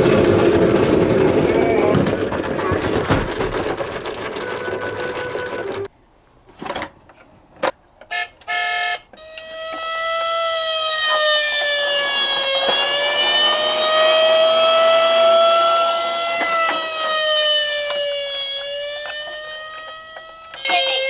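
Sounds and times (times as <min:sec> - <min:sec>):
noisy rumble: 0:00.0 - 0:04.4
emergency vehicle siren wailing: 0:08.1 - 0:21.0.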